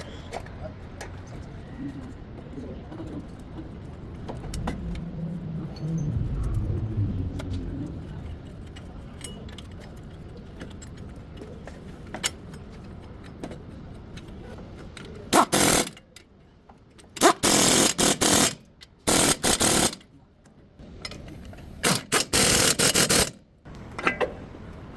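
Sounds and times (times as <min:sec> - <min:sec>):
low workshop rumble: 0:00.0 - 0:24.9
pneumatic air tool bursts: 0:15.3 - 0:16.0, 0:17.2 - 0:20.0, 0:21.3 - 0:23.4.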